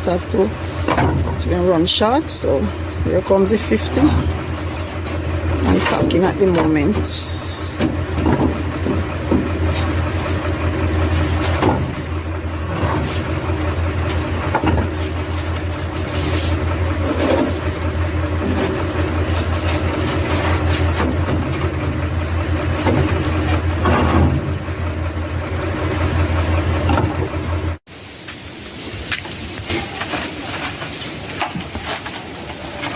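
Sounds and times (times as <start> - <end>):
truck engine idling: 0.0 - 32.9
concrete blocks knocking and clattering: 7.8 - 9.9.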